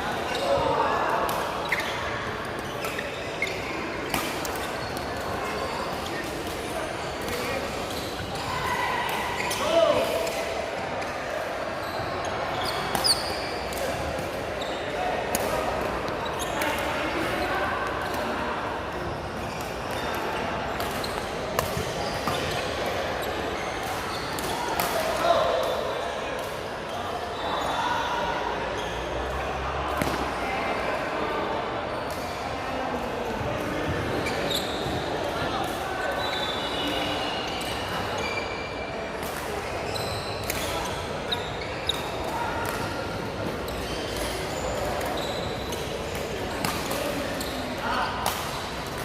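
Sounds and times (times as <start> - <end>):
large hall background noise: 0.0 - 49.0
shoes squeaking on floor: 1.6 - 8.5, 11.8 - 13.7, 14.5 - 15.0, 21.0 - 24.6, 33.9 - 35.2, 35.9 - 38.8, 39.7 - 42.2, 43.5 - 48.1
rackets hitting shuttlecock: 46.1 - 47.4.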